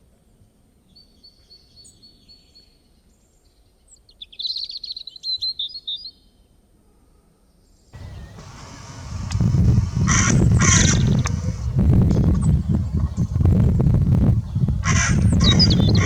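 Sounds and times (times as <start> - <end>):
songbird chirping and trilling: 8.0 - 16.0.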